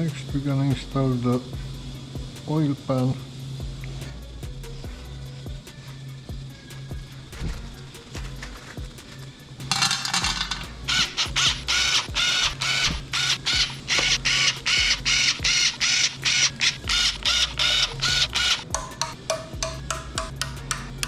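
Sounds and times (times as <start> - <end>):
background music: 0.0 - 21.0
ratchet wrench clicking: 8.2 - 21.0.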